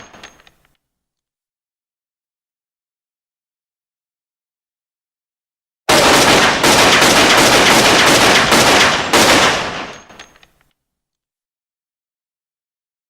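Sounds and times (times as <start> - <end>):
pistol firing rapid shots: 5.9 - 10.0.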